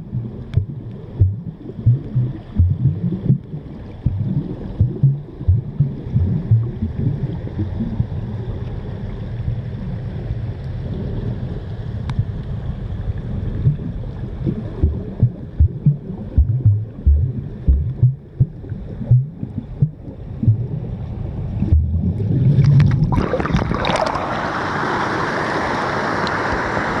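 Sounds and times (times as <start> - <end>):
muffled underwater rumble: 0.0 - 27.0
rush of water: 0.0 - 27.0.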